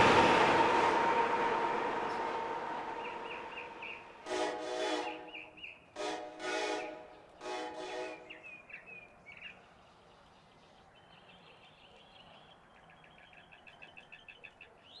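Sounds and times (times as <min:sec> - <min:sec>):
faint bird chirping: 0:02.0 - 0:04.2.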